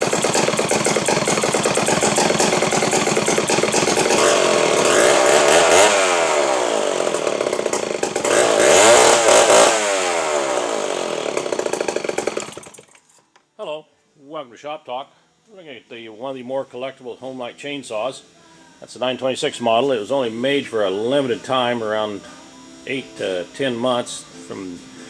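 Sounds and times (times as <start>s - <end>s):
chainsaw engine revving: 0.0s - 13.1s.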